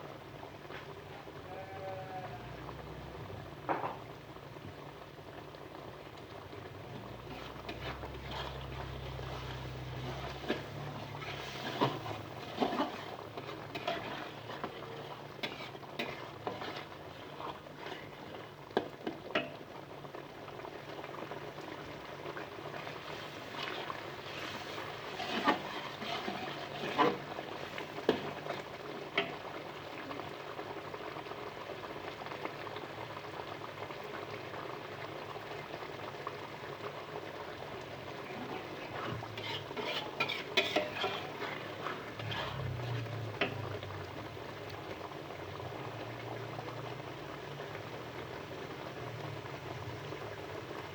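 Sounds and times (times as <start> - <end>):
food sizzling in a pan: 0.2 - 50.9
utensil clinking and scraping pan: 7.2 - 18.2, 23.6 - 28.6, 38.3 - 43.7.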